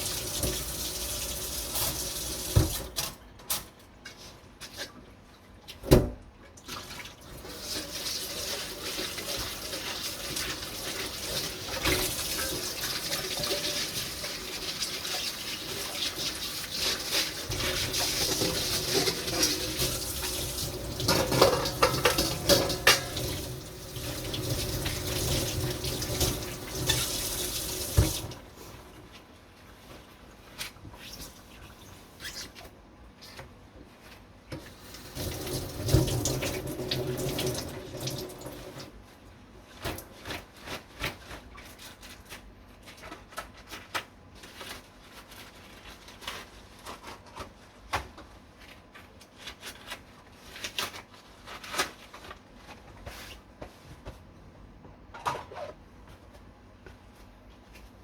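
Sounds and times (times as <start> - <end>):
tap running into sink: 1.7 - 2.9, 17.5 - 28.4
dishware clattering: 21.0 - 23.3.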